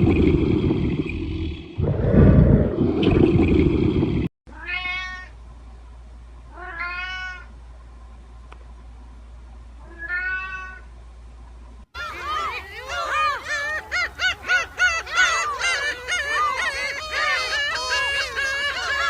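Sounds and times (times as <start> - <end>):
cat meowing: 6.5 - 7.5, 9.8 - 10.8.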